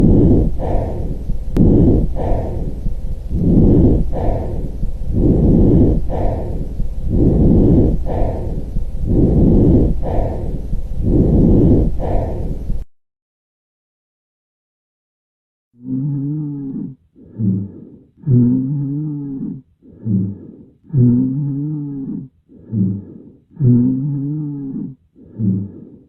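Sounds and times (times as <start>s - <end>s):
muffled lung breathing: 0.0s - 12.9s, 15.8s - 26.0s.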